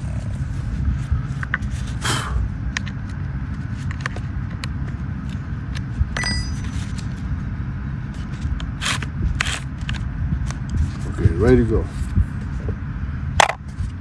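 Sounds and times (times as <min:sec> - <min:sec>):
steady low rumble: 0:00.0 - 0:14.0
metallic clink: 0:06.2 - 0:06.9.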